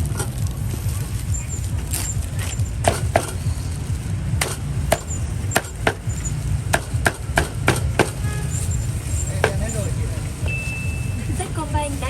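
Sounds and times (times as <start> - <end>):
cleaver chopping meat: 6.7 - 8.2.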